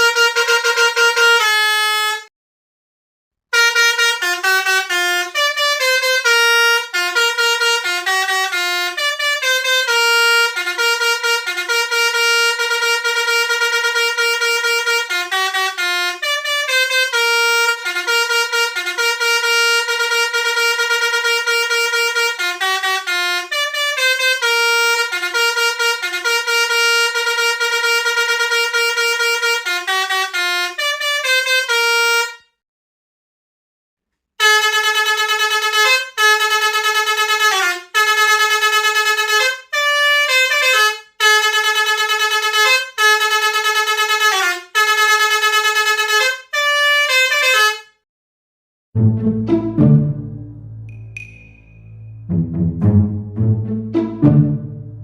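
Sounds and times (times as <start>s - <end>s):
musical air horn melody: 0.0s - 2.3s, 3.5s - 32.6s, 34.4s - 48.0s, 49.0s - 55.0s.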